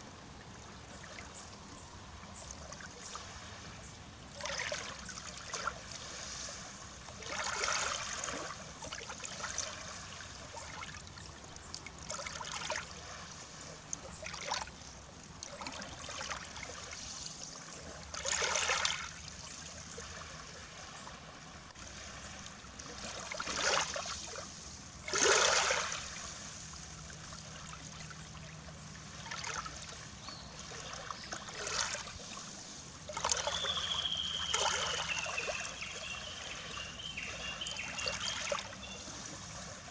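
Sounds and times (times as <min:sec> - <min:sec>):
small waves lapping on shore: 0:00.0 - 0:39.9
bird thin whistle: 0:33.2 - 0:39.1.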